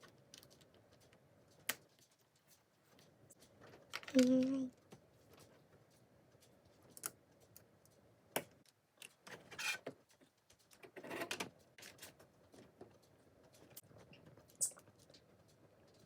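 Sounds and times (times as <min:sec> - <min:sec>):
plastic pieces clicking together: 0:03.9 - 0:04.6.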